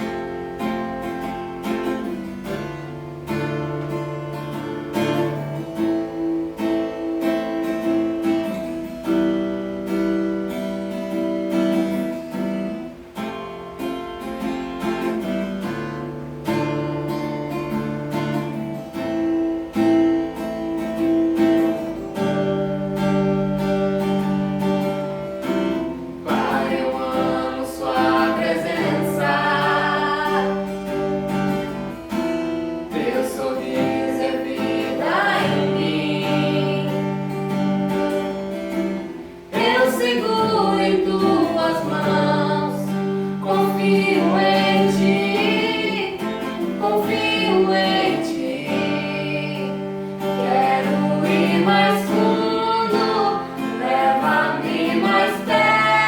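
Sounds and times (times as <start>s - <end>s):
guitar accompaniment: 0.0s - 56.0s
person singing: 26.2s - 31.1s, 32.9s - 37.4s, 39.5s - 56.0s.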